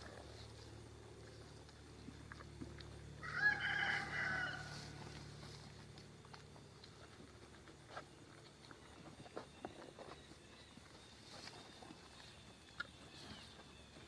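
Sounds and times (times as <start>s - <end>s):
rooster crowing: 3.2s - 4.9s.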